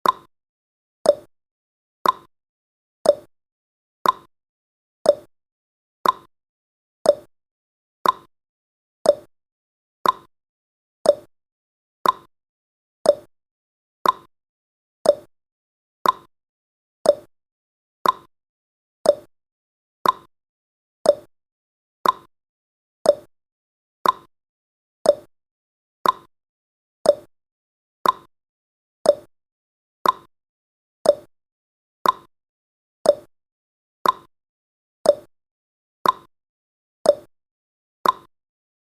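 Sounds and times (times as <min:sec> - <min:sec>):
timer ticking: 0:00.0 - 0:00.3, 0:01.1 - 0:01.3, 0:02.0 - 0:02.3, 0:03.0 - 0:03.3, 0:04.0 - 0:04.3, 0:05.0 - 0:05.3, 0:06.0 - 0:06.3, 0:07.0 - 0:07.3, 0:08.0 - 0:08.3, 0:09.0 - 0:09.3, 0:10.0 - 0:10.3, 0:11.0 - 0:11.3, 0:12.0 - 0:12.3, 0:13.0 - 0:13.3, 0:14.0 - 0:14.3, 0:15.0 - 0:15.3, 0:16.0 - 0:16.3, 0:17.0 - 0:17.3, 0:18.0 - 0:18.3, 0:19.0 - 0:19.3, 0:20.0 - 0:20.3, 0:21.0 - 0:21.3, 0:22.0 - 0:22.3, 0:23.0 - 0:23.3, 0:24.0 - 0:24.3, 0:25.0 - 0:25.3, 0:26.0 - 0:26.3, 0:27.0 - 0:27.3, 0:28.0 - 0:28.3, 0:29.0 - 0:29.3, 0:30.0 - 0:30.3, 0:31.0 - 0:31.3, 0:32.0 - 0:32.3, 0:33.0 - 0:33.3, 0:34.0 - 0:34.3, 0:35.0 - 0:35.3, 0:36.0 - 0:36.3, 0:37.1 - 0:37.3, 0:38.0 - 0:38.3.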